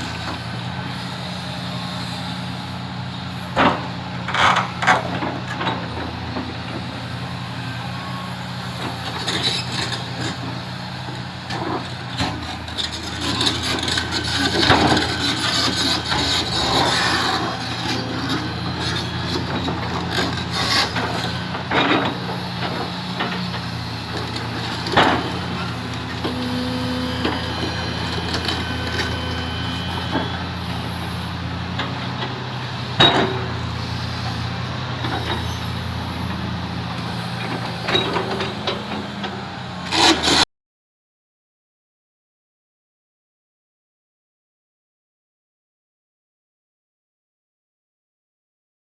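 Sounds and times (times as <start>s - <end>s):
excavator diesel engine running: 0.0s - 40.4s
steel grinding on stone: 24.6s - 31.4s.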